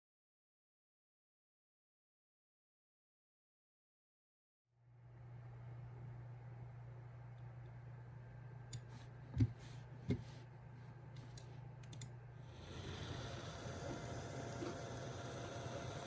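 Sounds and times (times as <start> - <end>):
filter motor humming: 11.2 - 16.0.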